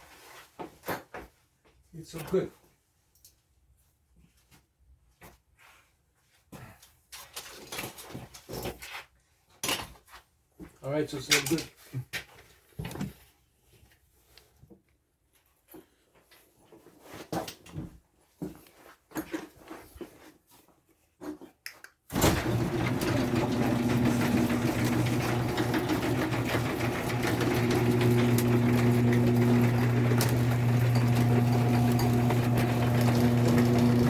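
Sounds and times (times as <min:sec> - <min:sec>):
garage door opener motor humming: 0:22.1 - 0:34.0.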